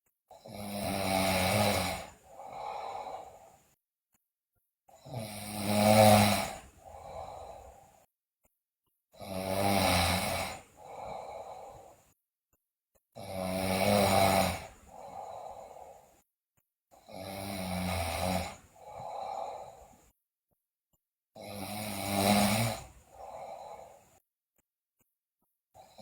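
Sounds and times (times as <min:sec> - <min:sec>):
girl snoring loudly: 0:00.3 - 0:03.6, 0:05.0 - 0:08.0, 0:09.2 - 0:12.0, 0:13.2 - 0:16.2, 0:17.0 - 0:19.9, 0:21.4 - 0:24.1, 0:25.8 - 0:26.0
soft breath sound: 0:02.1 - 0:03.8, 0:06.5 - 0:08.1, 0:10.1 - 0:12.2, 0:13.9 - 0:16.3, 0:18.6 - 0:20.2, 0:22.6 - 0:24.2.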